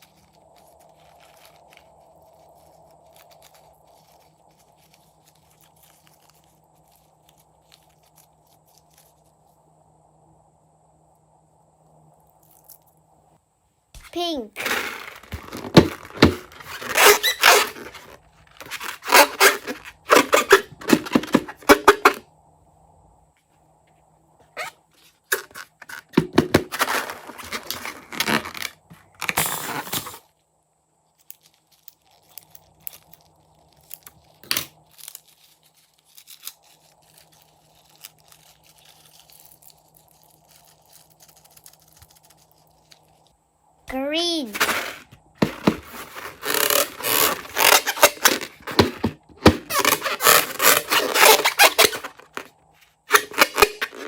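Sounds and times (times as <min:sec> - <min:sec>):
balloons and slime crackling: 0:31.5 - 0:43.2, 0:45.9 - 0:52.5.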